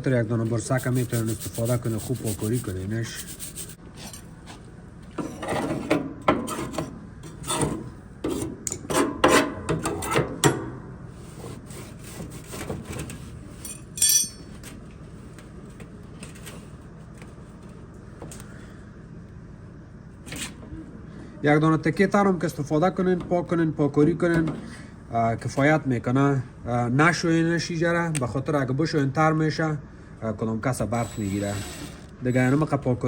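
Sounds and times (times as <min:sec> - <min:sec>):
small brush scrubbing: 0:00.5 - 0:03.8.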